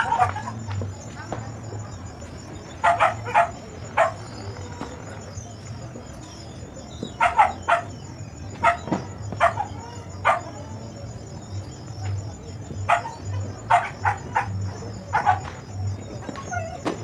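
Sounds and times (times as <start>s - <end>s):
dog barking: 0.0s - 0.6s, 2.8s - 4.4s, 7.2s - 8.0s, 8.6s - 10.7s, 12.8s - 15.7s.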